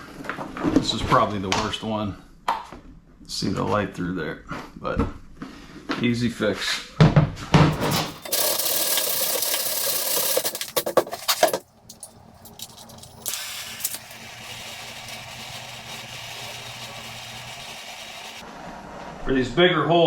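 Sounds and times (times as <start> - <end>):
gas torch flame hissing: 13.2 - 18.4.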